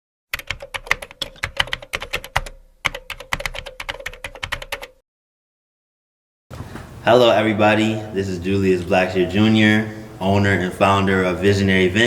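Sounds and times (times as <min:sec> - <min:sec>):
typing on keyboard: 0:00.3 - 0:05.0.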